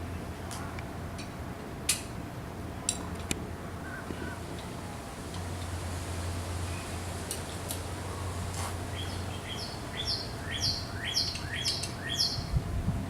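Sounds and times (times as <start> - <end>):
bird chirping: 8.9 - 12.5.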